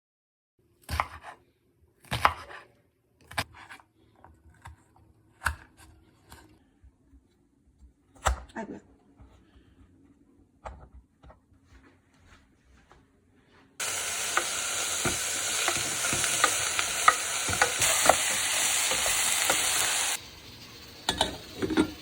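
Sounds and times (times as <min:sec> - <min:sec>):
knife chopping on cutting board: 0:02.1 - 0:02.6.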